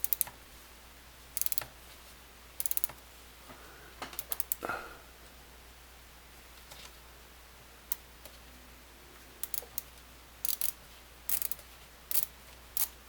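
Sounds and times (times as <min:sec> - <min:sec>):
metal clicks of small parts: 0:00.0 - 0:00.3, 0:01.4 - 0:01.7, 0:02.6 - 0:03.0, 0:04.1 - 0:04.6, 0:09.4 - 0:13.0.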